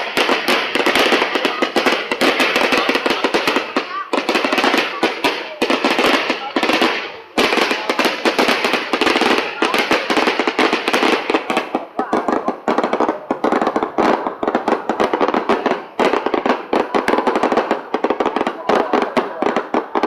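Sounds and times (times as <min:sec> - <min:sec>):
fireworks crackling and popping: 0:00.0 - 0:20.0.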